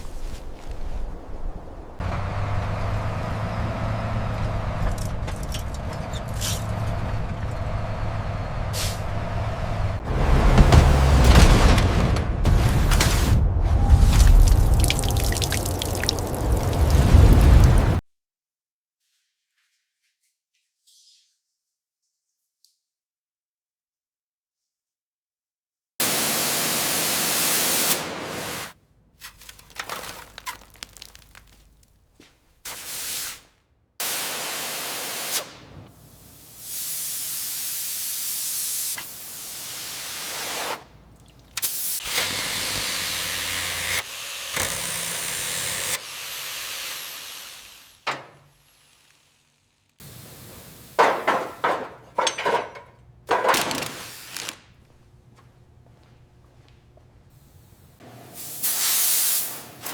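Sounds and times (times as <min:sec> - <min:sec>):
hissing spray bursts: 0:26.0 - 0:28.7, 0:32.6 - 0:40.9, 0:50.0 - 0:51.1, 0:57.4 - 0:59.9.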